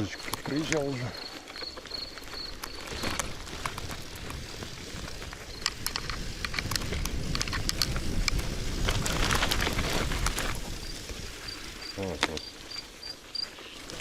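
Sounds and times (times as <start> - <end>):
bicycle drivetrain clicking: 0.0 - 14.0
bicycle tyres rumbling on dirt: 0.0 - 14.0.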